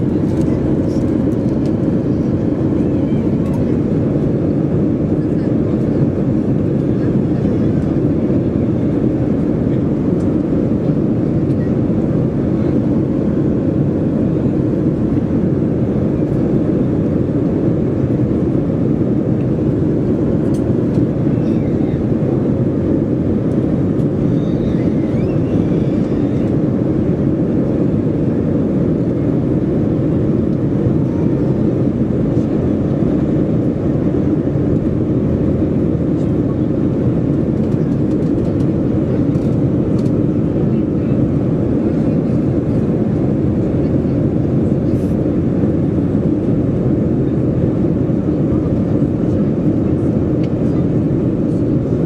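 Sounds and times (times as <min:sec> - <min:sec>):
airplane cabin roar: 0:00.0 - 0:52.0.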